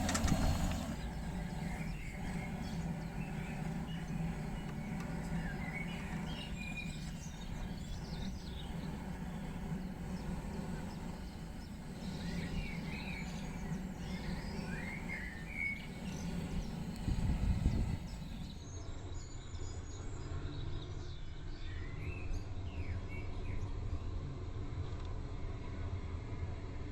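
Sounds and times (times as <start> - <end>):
low background rumble: 0.0 - 18.6
small birds chirping: 0.0 - 18.6.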